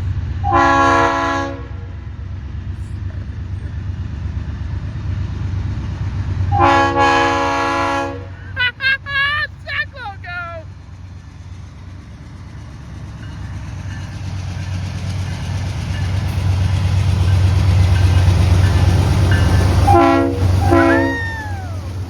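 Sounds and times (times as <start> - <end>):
train air horn chord: 19.9 - 21.1.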